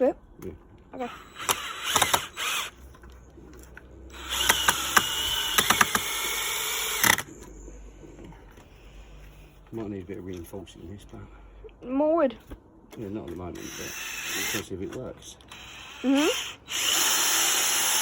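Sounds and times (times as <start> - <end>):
power drill driving screws: 1.1 - 2.8, 4.1 - 7.3, 13.5 - 14.8, 15.5 - 18.0.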